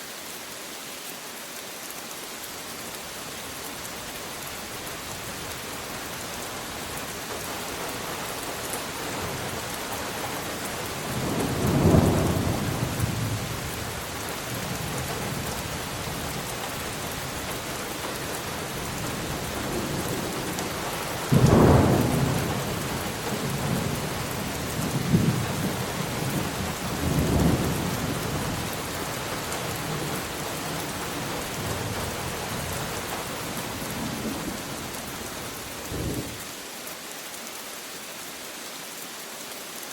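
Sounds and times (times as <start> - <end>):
heavy rain: 0.0 - 39.9
thunder rumbling: 11.0 - 13.7, 19.6 - 28.6.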